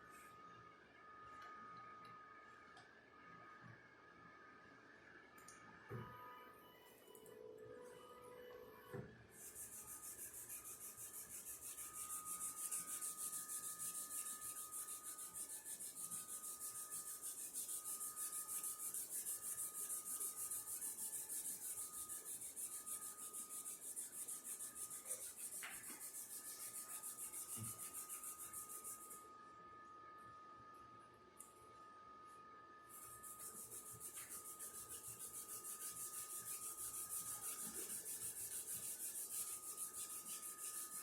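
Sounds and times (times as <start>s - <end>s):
faint steady high tone: 5.3s - 9.1s
hissy rubbing strokes: 9.4s - 29.2s, 33.0s - 41.0s.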